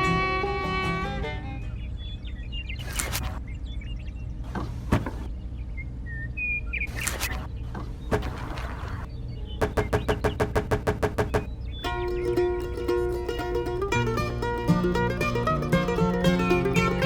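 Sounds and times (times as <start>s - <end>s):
small birds chirping: 0.0s - 17.0s
sharp knocks: 9.6s - 12.0s.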